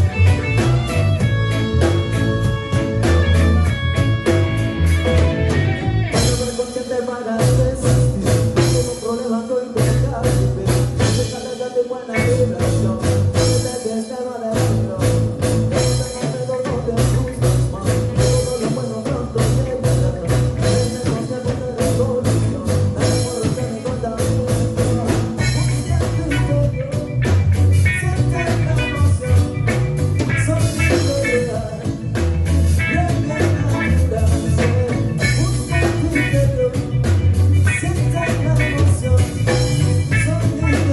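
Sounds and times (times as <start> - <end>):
band playing upbeat song: 0.0 - 40.9.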